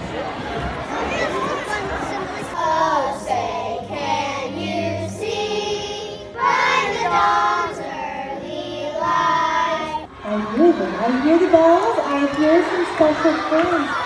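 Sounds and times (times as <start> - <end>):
children singing together: 0.6 - 10.1.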